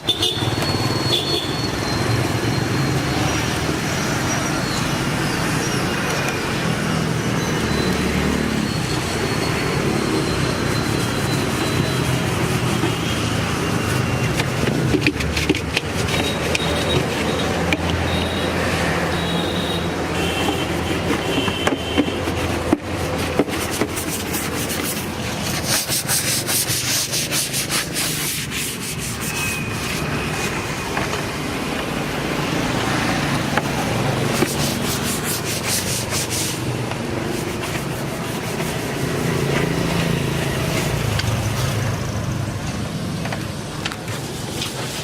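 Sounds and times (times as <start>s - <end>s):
scrubbing a refrigerator surface: 8.0s - 41.8s, 43.5s - 45.0s.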